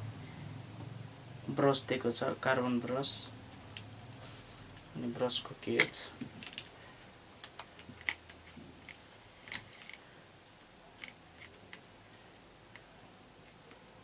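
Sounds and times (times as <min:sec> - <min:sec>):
small parts clicking and tapping: 0:05.6 - 0:13.9.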